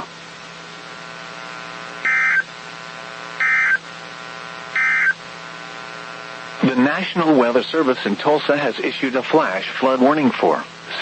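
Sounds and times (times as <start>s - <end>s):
electrical hum: 0.0s - 11.0s
shrill digital data tones: 2.1s - 2.4s, 4.8s - 5.2s.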